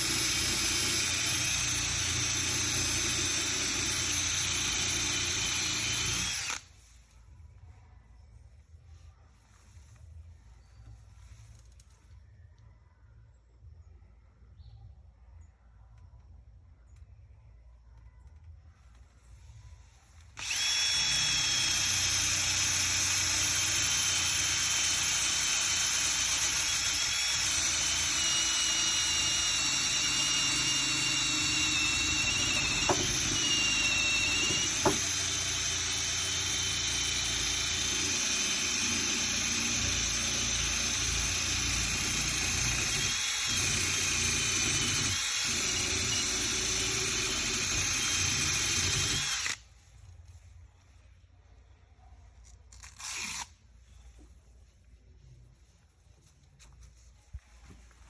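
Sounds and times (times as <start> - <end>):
electric sander whining: 20.4 - 22.8, 26.4 - 49.6.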